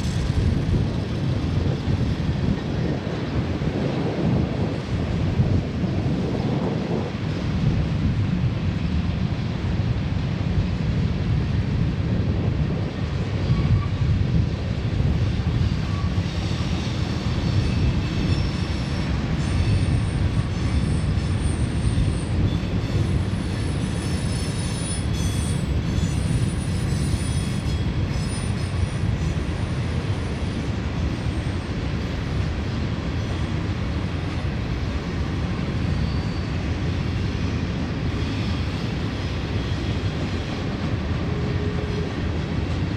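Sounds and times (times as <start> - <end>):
train wheels rumbling on rail: 0.0 - 42.9
high wheel squeal: 15.8 - 29.1, 35.8 - 36.7.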